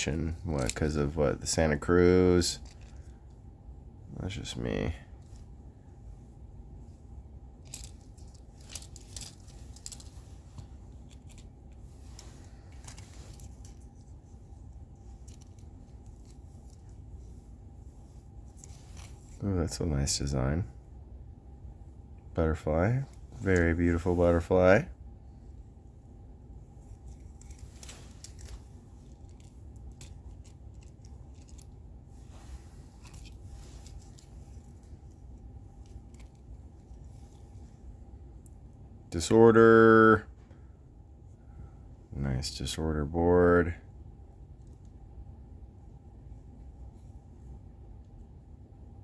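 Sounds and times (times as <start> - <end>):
steady low hum: 0.0 - 49.0
light plastic rustling: 7.6 - 19.8, 26.7 - 38.7.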